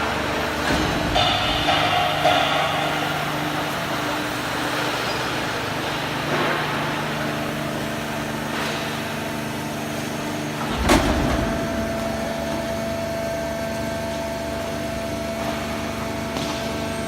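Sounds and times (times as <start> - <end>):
loud machine clunk: 0.0 - 9.6, 10.4 - 13.4
baler machine hum: 0.0 - 17.0.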